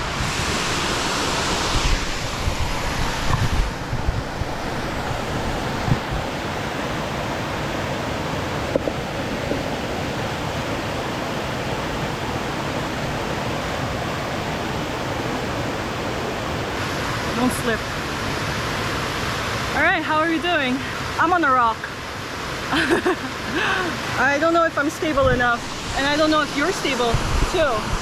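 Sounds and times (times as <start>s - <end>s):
waterfall rushing: 0.0s - 28.0s
small knocks: 8.7s - 9.6s.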